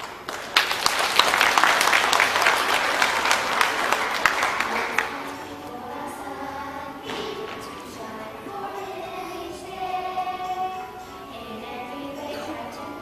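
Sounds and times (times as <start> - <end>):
audience applauding: 0.0 - 5.2.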